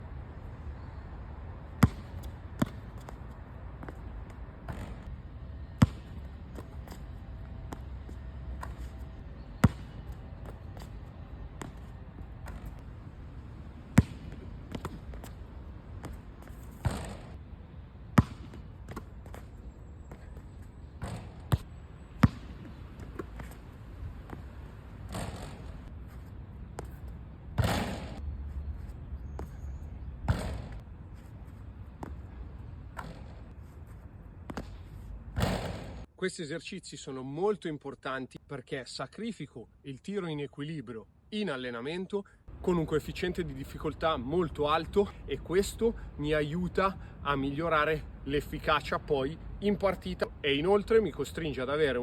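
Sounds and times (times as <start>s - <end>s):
basketball bouncing on court: 1.8s - 5.1s, 5.8s - 7.0s, 9.6s - 12.8s, 13.9s - 17.4s, 18.1s - 19.5s, 20.1s - 23.6s, 24.3s - 25.9s, 27.6s - 28.2s, 29.3s - 30.8s, 33.0s - 33.5s, 35.4s - 36.0s.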